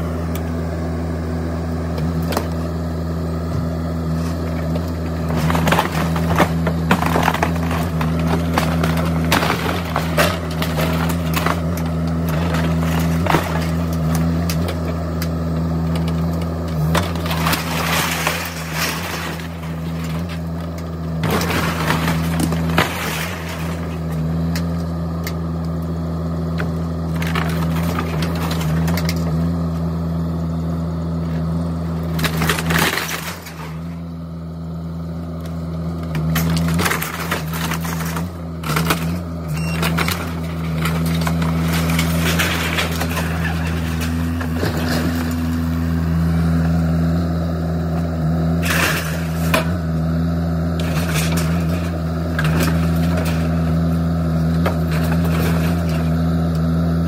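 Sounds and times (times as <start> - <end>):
demolition machine engine running: 0.0 - 57.0
wood cracking and crashing: 1.9 - 57.0.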